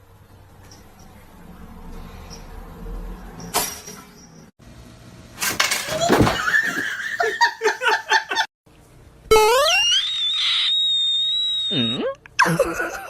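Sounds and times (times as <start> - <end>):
loud laughter: 6.4 - 8.5, 12.4 - 13.0.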